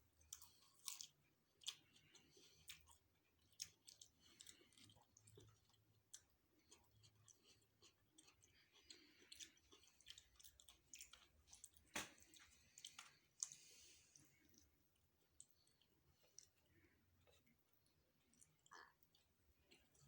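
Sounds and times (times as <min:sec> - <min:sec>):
chewing food with mouth clicks: 0:00.2 - 0:20.0.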